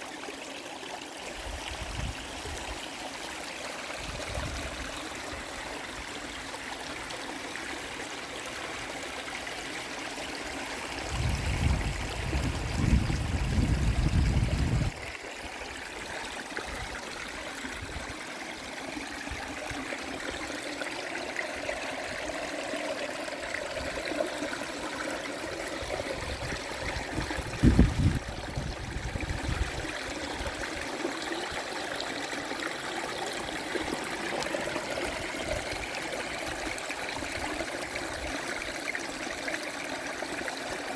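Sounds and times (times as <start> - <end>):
river water flowing: 0.0 - 40.9.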